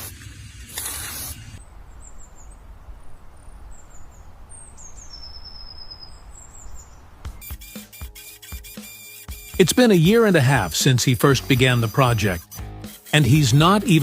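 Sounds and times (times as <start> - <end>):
small birds chirping: 1.6 - 7.6.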